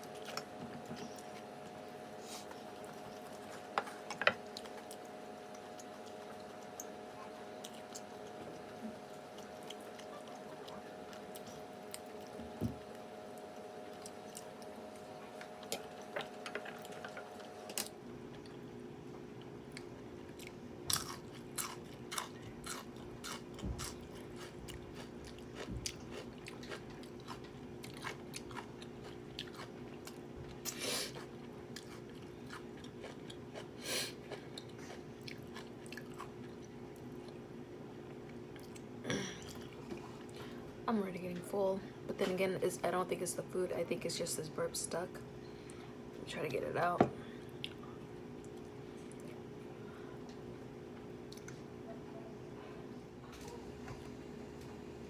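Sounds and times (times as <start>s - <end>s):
chewing and biting food: 0.0s - 18.6s, 19.4s - 37.4s
food crunching: 0.0s - 18.6s, 19.4s - 37.5s
steady background hum: 0.0s - 55.0s.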